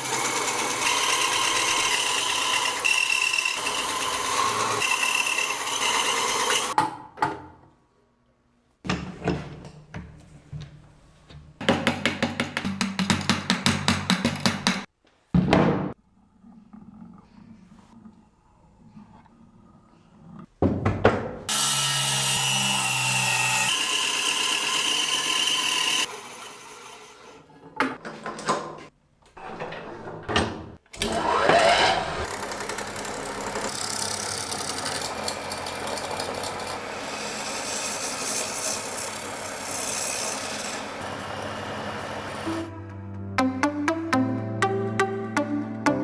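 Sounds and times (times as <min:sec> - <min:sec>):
power tool cutting wood: 0:00.0 - 0:06.8, 0:21.5 - 0:27.4, 0:31.0 - 0:42.7
power tool motor running: 0:21.5 - 0:27.1.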